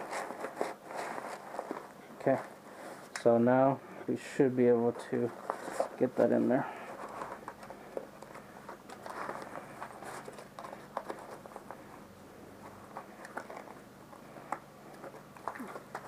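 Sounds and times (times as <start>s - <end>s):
fabric rustling: 0.0s - 3.1s.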